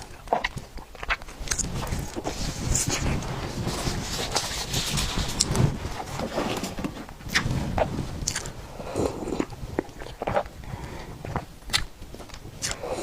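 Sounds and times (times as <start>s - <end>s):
mouth smacks and clicks: 0.0s - 3.2s, 8.2s - 13.0s
chewing cake close up: 0.0s - 5.6s, 7.3s - 13.0s.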